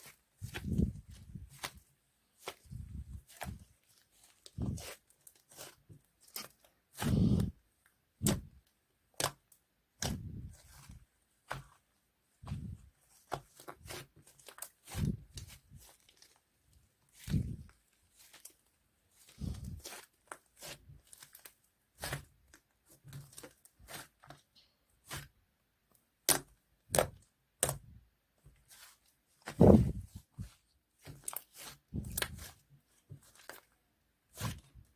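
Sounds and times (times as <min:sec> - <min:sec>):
slime squelching and popping: 0:00.0 - 0:07.6, 0:08.2 - 0:11.8, 0:12.4 - 0:16.4, 0:26.1 - 0:28.0, 0:28.6 - 0:34.9.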